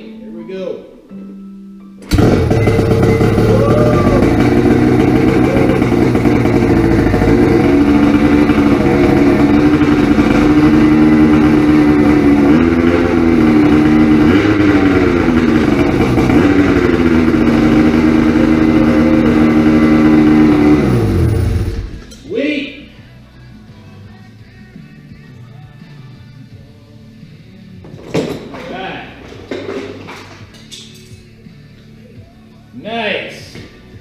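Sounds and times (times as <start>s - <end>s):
snowmobile engine running: 2.1s - 22.0s.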